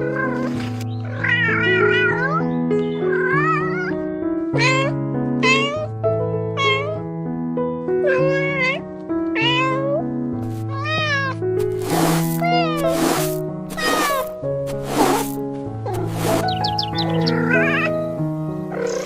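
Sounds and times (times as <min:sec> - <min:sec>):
cat meowing: 0:00.0 - 0:04.0, 0:04.6 - 0:05.9, 0:06.6 - 0:07.0, 0:08.1 - 0:08.8, 0:09.4 - 0:10.0, 0:10.7 - 0:11.4, 0:13.7 - 0:14.3, 0:15.9 - 0:18.1
background music of held notes: 0:00.0 - 0:12.3, 0:13.1 - 0:19.0.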